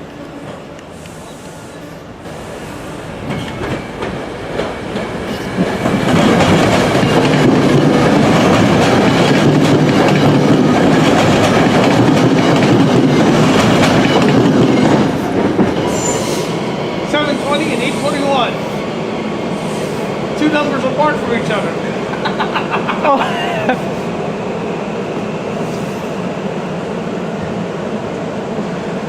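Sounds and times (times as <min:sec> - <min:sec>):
train wheels on rails: 0:00.0 - 0:29.0.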